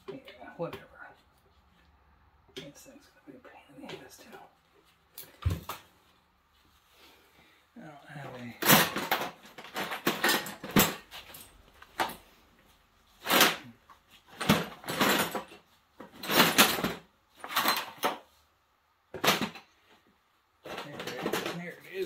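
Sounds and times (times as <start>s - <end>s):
metal tools clattering: 8.5s - 12.2s, 14.3s - 18.2s.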